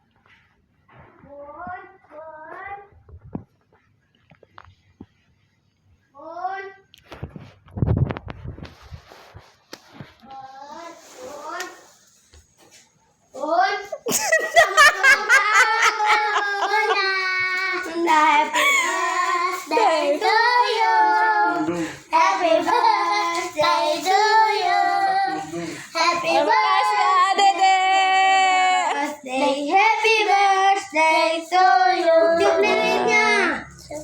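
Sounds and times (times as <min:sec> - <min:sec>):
child singing: 0:15.0 - 0:34.0.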